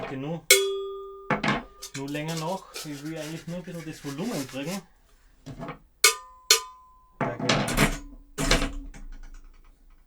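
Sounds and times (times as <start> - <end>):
metal prop rattling: 0.0 - 4.1
metal prop struck with ring: 0.5 - 2.5, 6.0 - 7.0.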